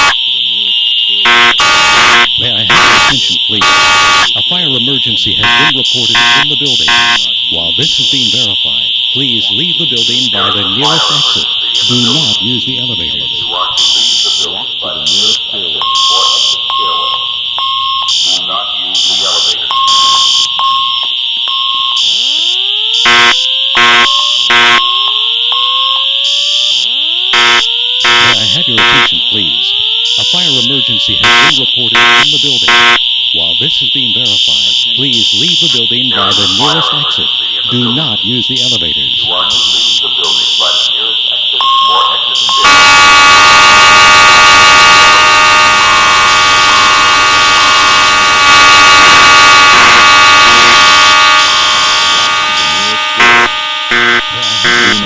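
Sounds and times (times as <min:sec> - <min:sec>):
voice evacuation message: 0:00.0 - 0:00.2, 0:01.2 - 0:55.0
fire alarm horn pulses: 0:00.0 - 0:55.0
steady high-pitched tone: 0:01.2 - 0:55.0.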